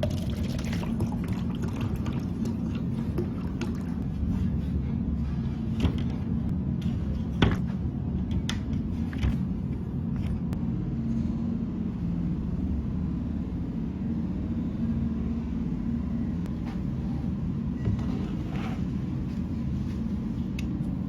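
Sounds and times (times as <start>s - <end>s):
low mechanical rumble: 0.0s - 21.0s.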